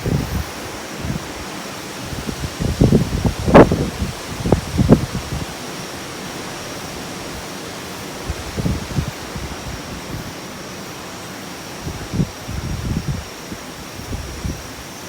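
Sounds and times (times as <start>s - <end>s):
wind rushing: 0.0s - 5.5s
wind buffeting microphone: 0.0s - 10.5s, 11.8s - 14.9s.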